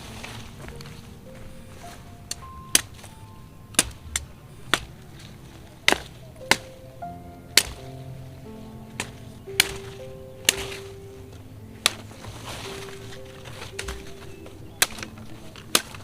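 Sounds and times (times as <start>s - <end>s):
music of held notes: 0.0s - 16.0s
sharp clean strikes: 5.9s - 11.0s.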